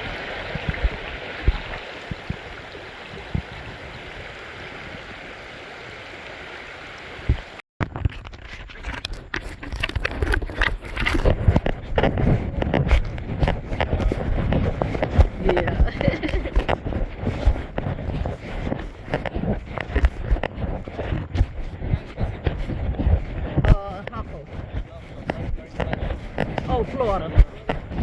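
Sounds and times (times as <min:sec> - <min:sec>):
stream water rushing: 0:00.0 - 0:07.6
rustling and scraping clicks: 0:07.8 - 0:28.0
thumps on microphone: 0:10.3 - 0:28.0.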